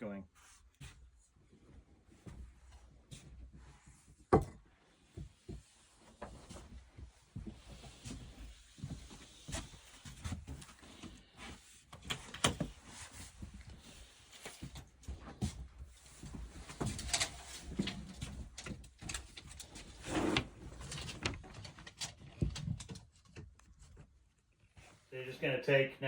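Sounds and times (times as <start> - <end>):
handling knocks and clatter: 16.2 - 24.2.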